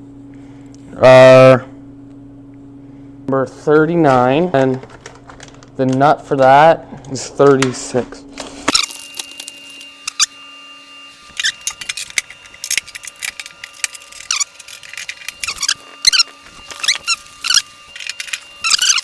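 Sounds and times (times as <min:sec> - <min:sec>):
metal parts clinking and squeaking: 0:08.7 - 0:10.4, 0:11.1 - 0:19.0.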